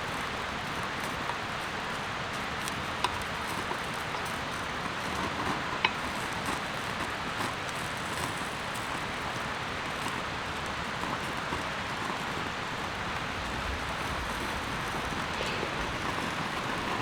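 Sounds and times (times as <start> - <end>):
steady rain: 0.0 - 17.0
raindrop ticks: 8.1 - 17.0.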